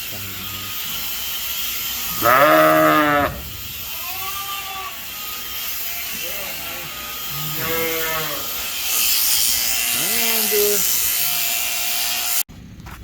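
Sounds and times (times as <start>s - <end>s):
sheep bleating: 2.0s - 8.7s, 9.8s - 11.0s.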